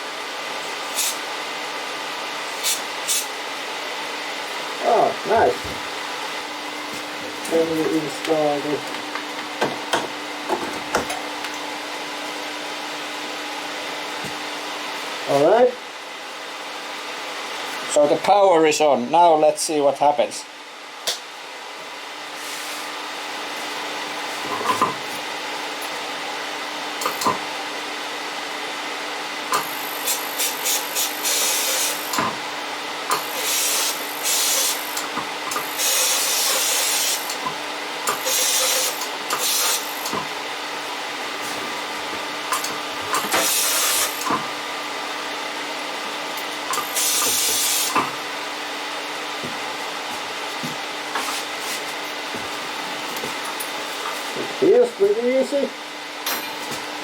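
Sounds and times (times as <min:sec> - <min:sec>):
steady hum: 0:00.0 - 0:16.3
spray gun hissing bursts: 0:02.6 - 0:03.3, 0:30.0 - 0:32.0, 0:43.4 - 0:44.2, 0:46.9 - 0:48.0.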